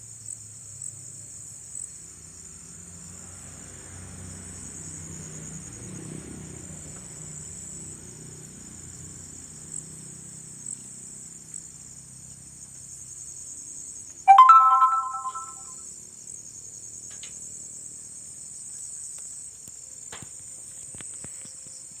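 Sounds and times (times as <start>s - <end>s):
short chime of stacked tones: 14.3s - 15.7s.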